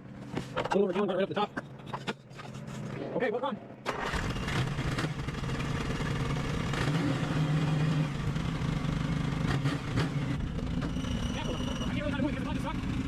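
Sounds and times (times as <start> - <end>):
car engine running steadily: 4.1 - 13.0.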